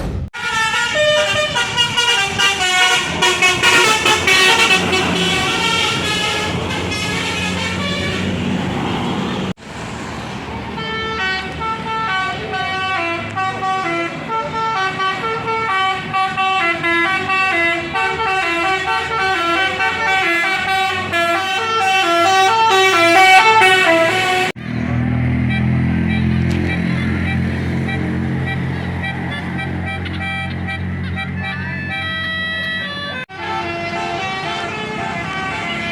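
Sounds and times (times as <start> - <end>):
bus engine: 0.0 - 35.9
traffic noise: 0.0 - 35.9
multi-tone bus horn tune: 0.4 - 9.6, 10.6 - 35.9.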